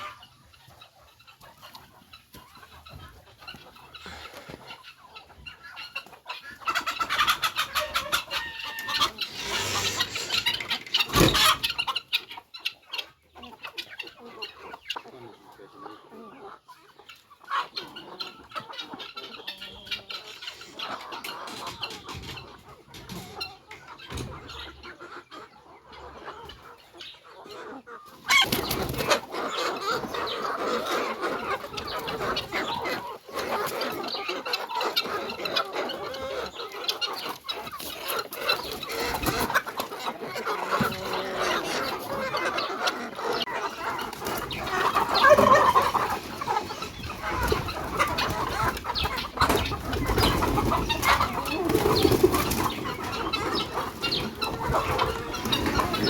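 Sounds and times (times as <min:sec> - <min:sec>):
chickens clucking: 0:00.0 - 0:56.0.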